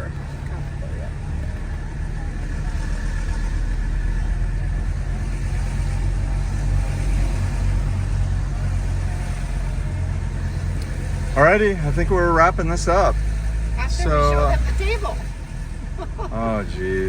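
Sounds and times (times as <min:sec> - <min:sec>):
car engine drone from inside: 0:00.0 - 0:17.0.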